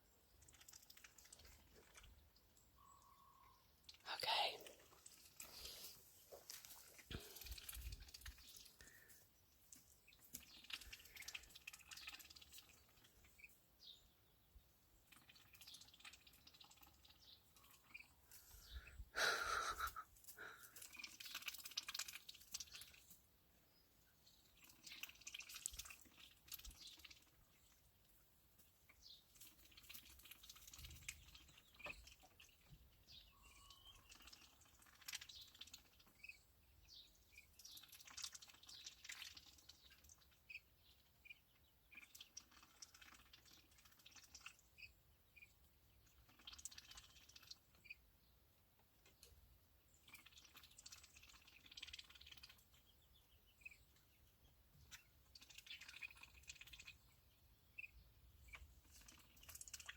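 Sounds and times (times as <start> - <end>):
high bird chirps: 33.1 - 34.1.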